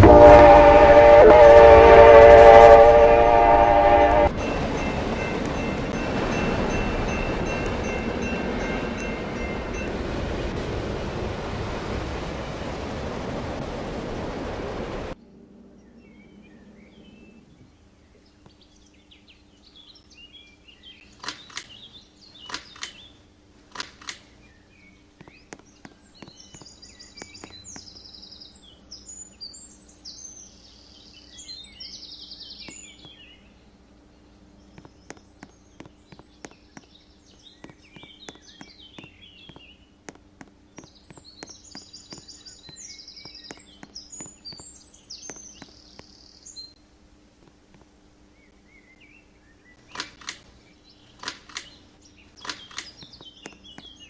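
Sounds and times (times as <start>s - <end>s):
sharp clicks: 21.2s - 23.1s, 23.7s - 24.4s, 49.8s - 54.0s
small birds chirping and trilling: 24.3s - 46.8s, 47.7s - 54.0s.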